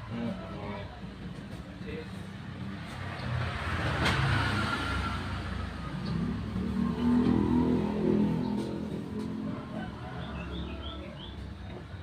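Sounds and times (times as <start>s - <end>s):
scooter engine revving: 3.5s - 9.5s.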